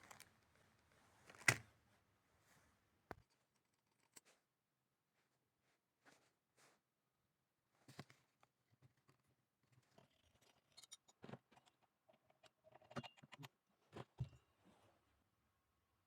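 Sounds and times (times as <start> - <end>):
small tools clicking and knocking: 9.8 - 14.1.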